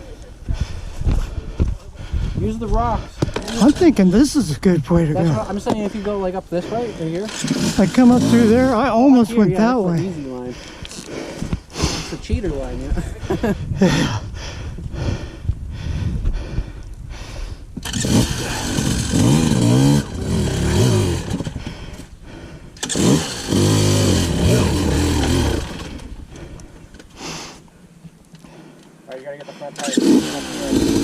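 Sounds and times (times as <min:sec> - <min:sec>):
dirt bike engine revving: 0:07.1 - 0:09.9, 0:17.8 - 0:21.6, 0:22.8 - 0:26.2, 0:29.8 - 0:31.0.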